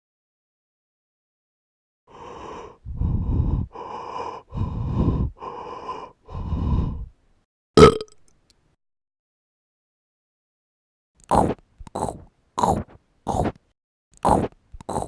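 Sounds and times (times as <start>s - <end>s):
person breathing heavily: 2.1s - 7.2s.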